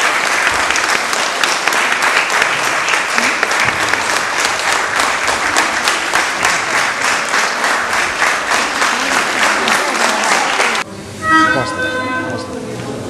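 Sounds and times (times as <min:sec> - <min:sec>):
audience clapping: 0:00.0 - 0:10.9.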